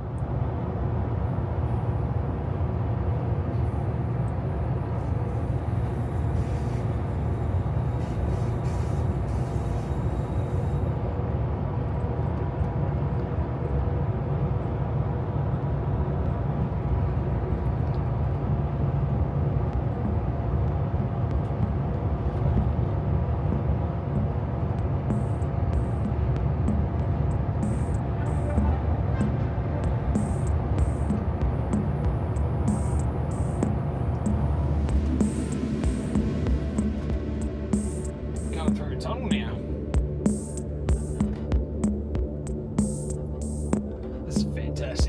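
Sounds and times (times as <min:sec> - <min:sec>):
train rumbling in motion: 0:00.0 - 0:45.0.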